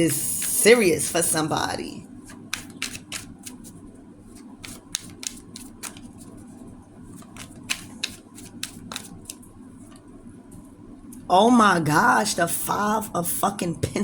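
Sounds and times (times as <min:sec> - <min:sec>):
cards being shuffled: 0:02.3 - 0:10.0.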